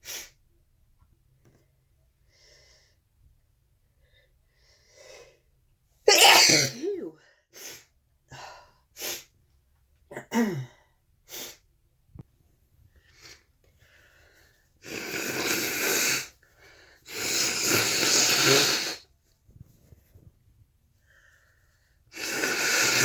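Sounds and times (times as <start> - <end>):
person sneezing: 6.1 - 7.2
nose blowing into handkerchief: 14.8 - 16.4, 17.0 - 19.1, 22.1 - 23.0
person sniffing: 14.8 - 16.4, 17.0 - 19.0.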